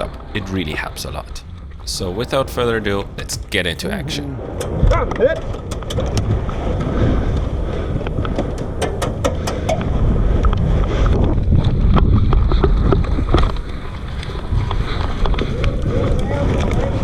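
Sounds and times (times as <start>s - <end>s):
wind rumbling on microphone: 4.4s - 17.0s.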